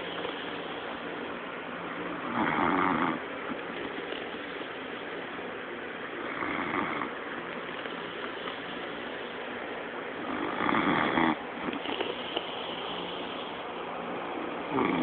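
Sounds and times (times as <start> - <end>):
man snoring: 2.3 - 3.2, 6.3 - 7.1, 10.3 - 11.4, 14.7 - 15.0.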